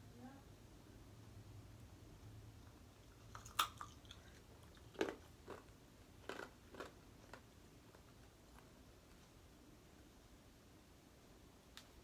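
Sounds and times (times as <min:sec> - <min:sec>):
person chewing crunchy food: 0:03.0 - 0:08.1.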